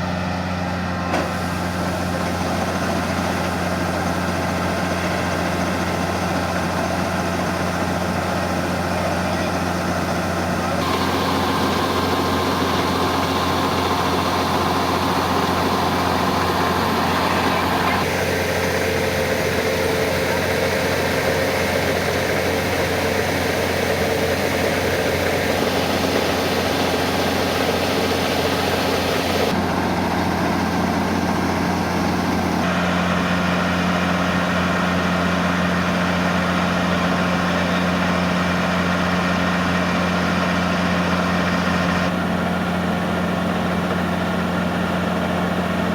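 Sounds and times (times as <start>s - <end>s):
farm machine engine running: 0.0s - 45.9s.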